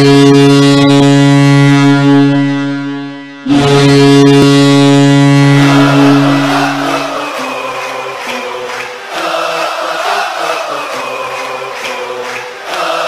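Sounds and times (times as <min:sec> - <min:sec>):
arena goal horn blasts: 0:00.0 - 0:08.8.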